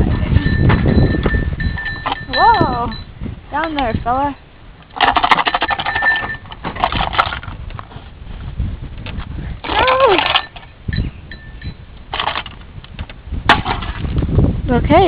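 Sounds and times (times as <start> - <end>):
goats scuffling around tin can: 3.6 - 8.1, 9.1 - 10.7, 12.1 - 12.7, 13.5 - 14.2.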